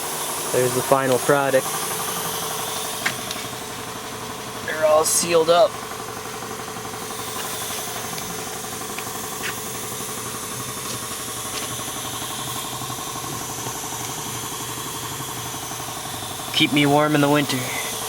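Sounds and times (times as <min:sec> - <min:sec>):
motor humming: 0:00.0 - 0:18.0.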